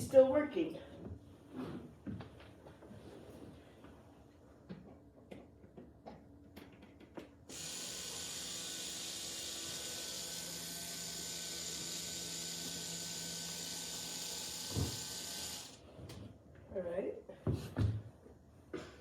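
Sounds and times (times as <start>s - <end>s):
steady mechanical whir: 7.5s - 15.8s.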